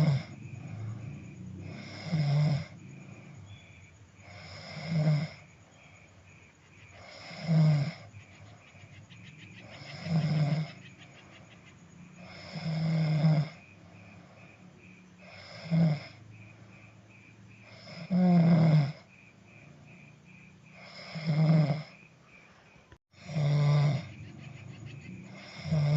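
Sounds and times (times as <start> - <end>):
person snoring: 0.0 - 3.5, 4.2 - 5.5, 7.0 - 8.1, 9.6 - 10.8, 12.2 - 14.3, 15.2 - 16.2, 17.6 - 19.1, 20.8 - 22.0, 23.2 - 24.2, 25.2 - 25.9
quiet breathing: 0.0 - 25.9.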